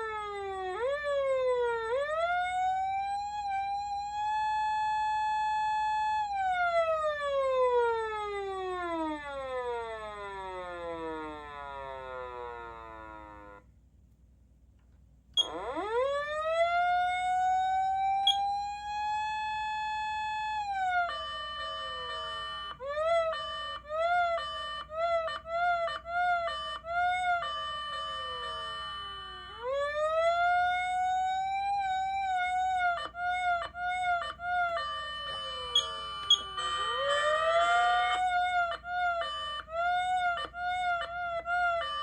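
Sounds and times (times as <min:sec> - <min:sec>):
siren wail: 0:00.0 - 0:13.7, 0:15.4 - 0:42.0
steady siren tones: 0:00.0 - 0:13.7, 0:15.4 - 0:42.0
short rising siren whoops: 0:35.4 - 0:38.4.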